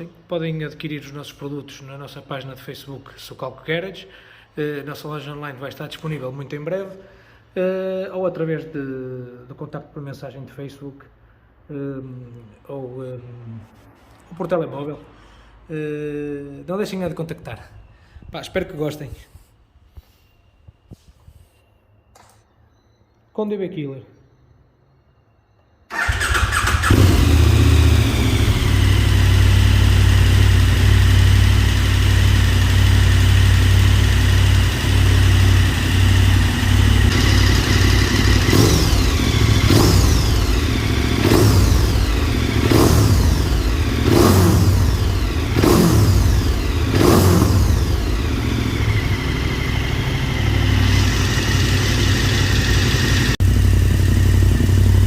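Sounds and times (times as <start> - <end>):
motorcycle engine idling and revving: 25.9 - 55.0.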